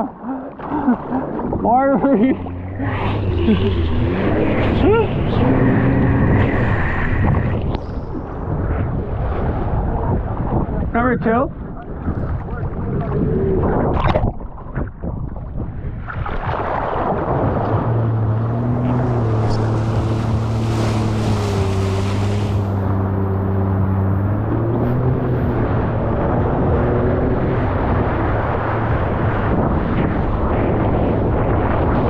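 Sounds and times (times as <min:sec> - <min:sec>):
watercraft engine running: 0:00.0 - 0:10.4, 0:15.6 - 0:32.0
rushing ocean water: 0:00.0 - 0:10.9, 0:11.6 - 0:32.0
wind buffeting microphone: 0:00.8 - 0:32.0.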